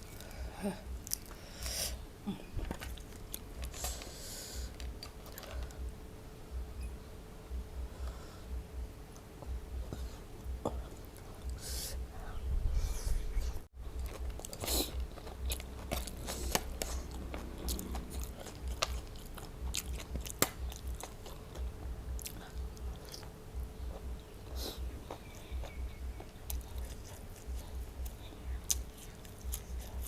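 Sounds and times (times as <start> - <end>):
person crunching raw vegetables: 13.8 - 30.0.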